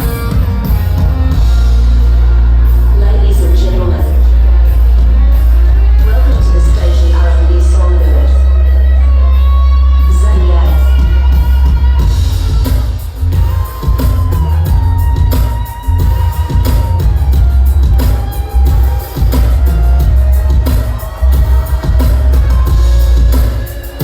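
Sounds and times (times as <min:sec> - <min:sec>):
heavy bass line: 0:00.0 - 0:24.0
live band music: 0:00.0 - 0:24.0.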